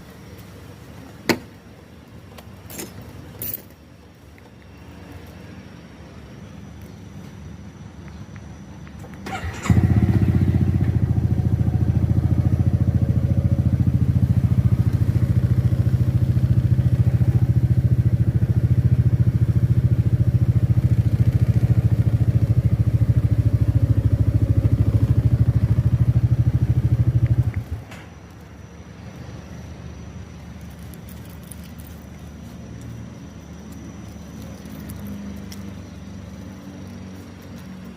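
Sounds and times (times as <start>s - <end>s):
scooter engine starting and idling: 9.2s - 28.1s.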